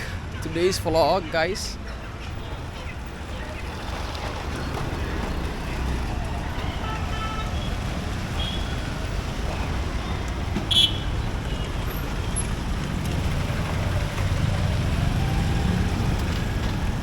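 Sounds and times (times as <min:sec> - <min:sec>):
rumble of passing vehicles: 0:00.0 - 0:17.0
engine rising and falling in pitch: 0:13.0 - 0:17.0.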